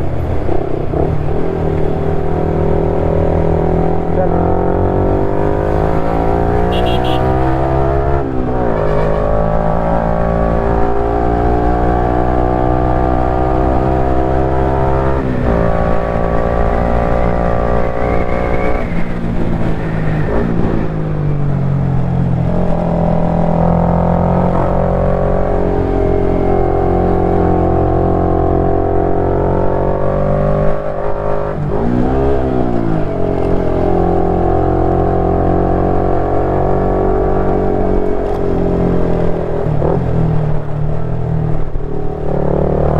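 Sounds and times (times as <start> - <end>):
motorcycle engine running: 5.6 - 7.6.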